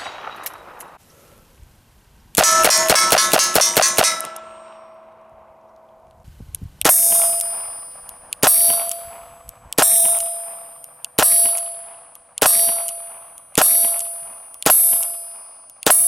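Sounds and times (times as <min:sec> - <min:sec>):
revolver gunshots: 0:00.0 - 0:01.0
steel target ringing: 0:02.4 - 0:06.0, 0:06.9 - 0:16.0.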